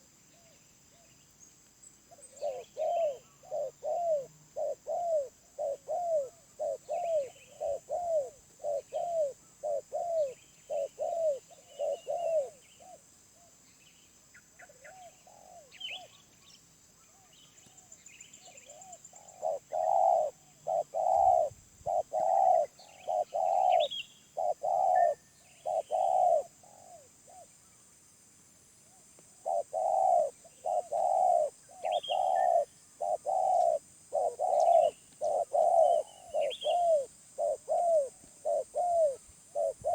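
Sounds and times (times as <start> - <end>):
small birds chirping: 0.0 - 13.0, 13.6 - 27.8, 28.8 - 39.9
doves cooing: 2.1 - 13.0, 18.7 - 27.5, 29.4 - 39.9.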